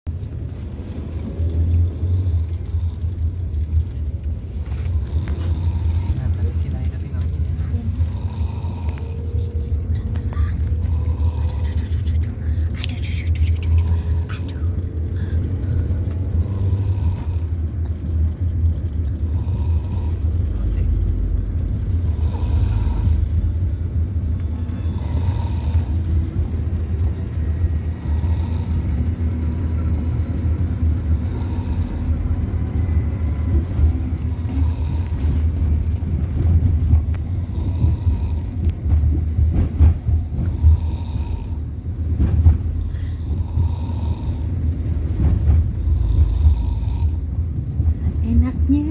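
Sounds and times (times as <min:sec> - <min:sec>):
steady low rumble: 0:00.0 - 0:48.9
child snoring: 0:04.7 - 0:06.6, 0:07.6 - 0:14.7, 0:16.3 - 0:17.6, 0:19.2 - 0:20.4, 0:22.0 - 0:23.5, 0:24.8 - 0:26.6, 0:27.8 - 0:29.2, 0:31.0 - 0:32.8, 0:33.6 - 0:35.6, 0:37.1 - 0:38.8, 0:40.3 - 0:41.7, 0:42.8 - 0:44.7, 0:45.8 - 0:47.3.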